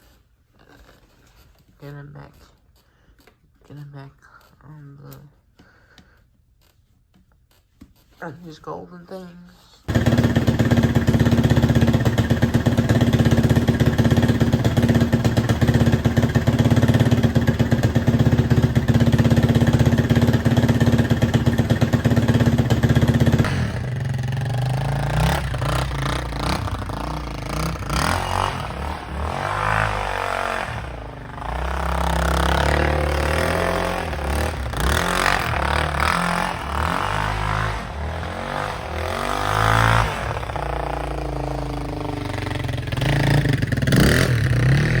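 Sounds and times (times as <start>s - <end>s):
atv engine running: 9.9s - 45.0s.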